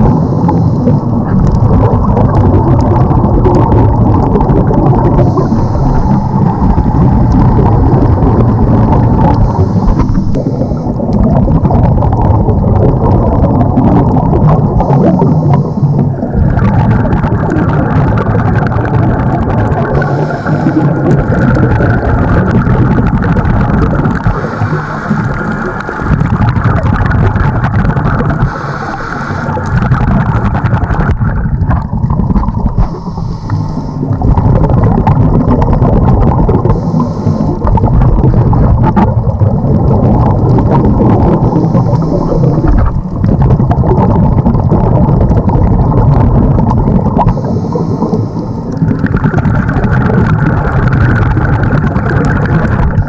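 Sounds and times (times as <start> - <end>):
diver breathing through regulator: 0.0 - 1.6, 5.0 - 11.2, 14.8 - 16.8, 19.9 - 21.4, 24.2 - 25.6, 28.3 - 29.7, 32.8 - 34.2, 36.6 - 37.8, 41.2 - 43.0, 47.3 - 49.0
exhaled bubbles gushing: 0.0 - 53.0
underwater rumble: 0.0 - 53.0.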